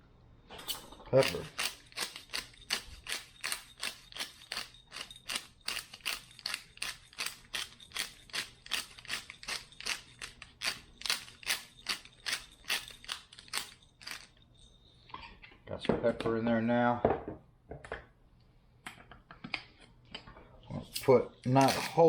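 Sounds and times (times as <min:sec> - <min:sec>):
pepper grinder grinding: 0:00.7 - 0:14.4, 0:20.9 - 0:22.0.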